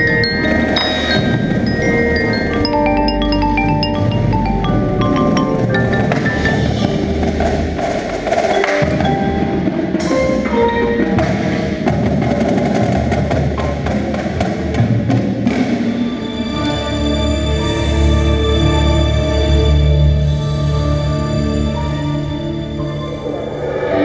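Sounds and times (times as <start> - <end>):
xylophone and glockenspiel notes: 0.0 - 7.7, 8.3 - 11.5
drum and wood-block strikes: 0.0 - 16.1.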